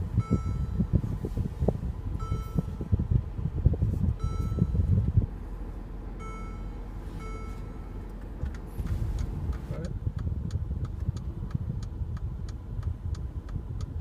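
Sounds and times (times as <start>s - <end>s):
car cabin chime: 0.0s - 1.1s, 2.2s - 3.0s, 4.2s - 5.1s, 6.2s - 8.6s
low cabin rumble: 0.0s - 14.0s.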